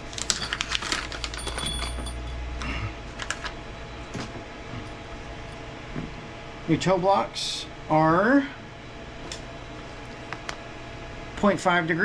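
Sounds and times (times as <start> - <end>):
small parts clicking and rattling: 0.0 - 2.3
steady low hum: 0.0 - 12.0.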